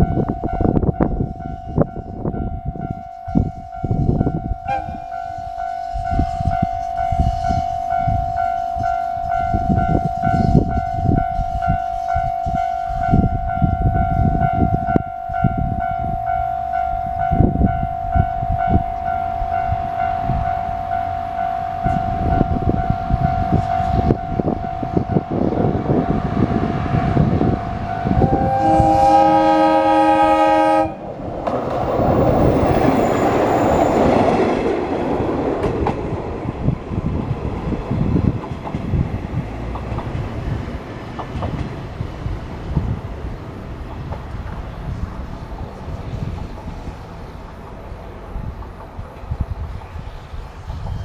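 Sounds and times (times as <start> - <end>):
level crossing alarm ringing: 0.0 - 34.5.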